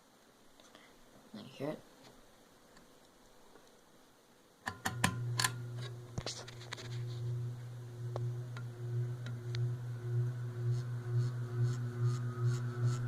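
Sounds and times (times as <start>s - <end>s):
ceiling fan motor buzzing: 4.7s - 13.0s.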